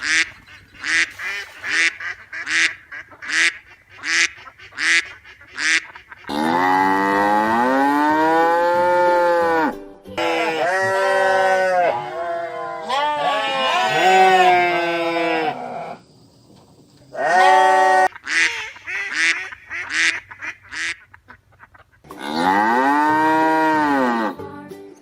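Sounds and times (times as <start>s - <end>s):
cattle mooing: 6.3s - 16.0s, 22.1s - 24.4s
short high honking calls: 10.2s - 11.0s.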